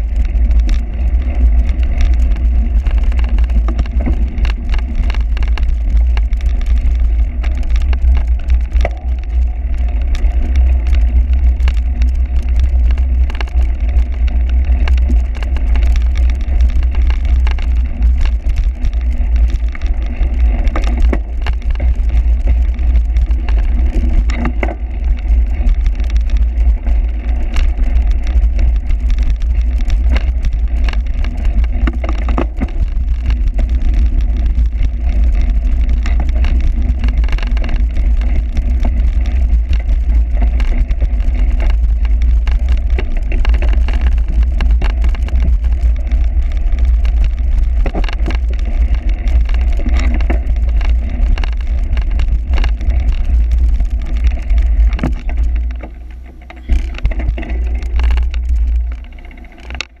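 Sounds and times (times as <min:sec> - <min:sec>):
bike rattling over rough ground: 0:00.0 - 1:00.0
wind rumble on microphone: 0:00.0 - 1:00.0.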